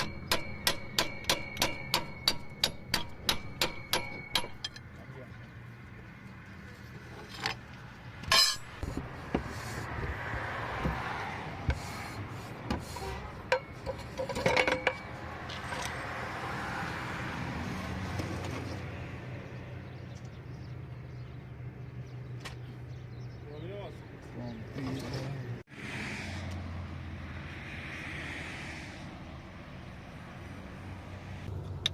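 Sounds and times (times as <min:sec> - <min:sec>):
metal tools clinking and knocking: 0:00.0 - 0:04.9, 0:08.2 - 0:08.9, 0:13.5 - 0:16.0.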